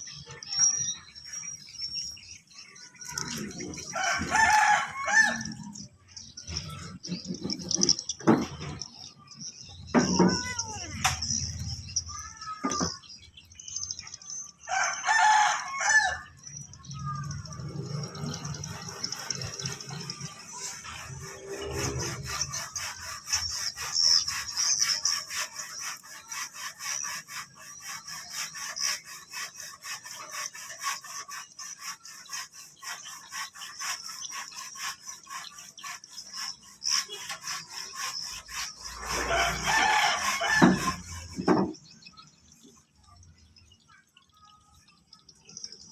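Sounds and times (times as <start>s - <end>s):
rooster crowing: 3.9s - 5.7s, 14.7s - 16.4s, 39.1s - 41.0s.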